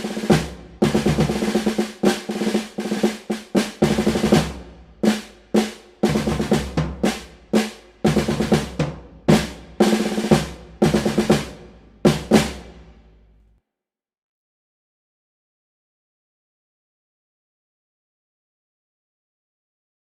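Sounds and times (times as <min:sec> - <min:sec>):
snare drum strokes and rolls: 0:00.0 - 0:13.1.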